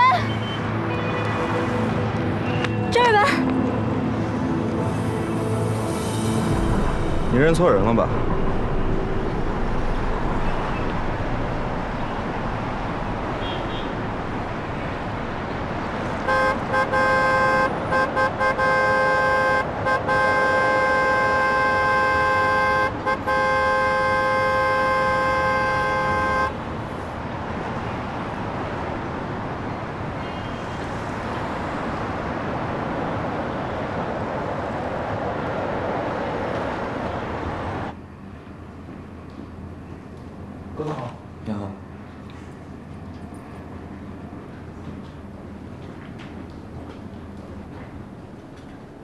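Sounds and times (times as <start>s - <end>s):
street traffic noise: 0.0s - 49.0s
car horn honking: 16.2s - 26.6s.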